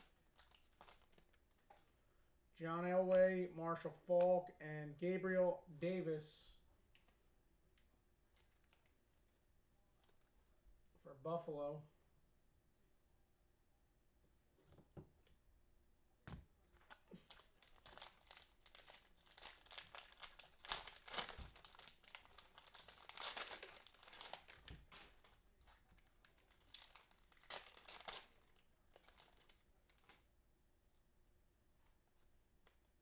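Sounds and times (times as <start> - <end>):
cellophane tearing and crinkling: 0.0 - 1.8, 16.7 - 30.2.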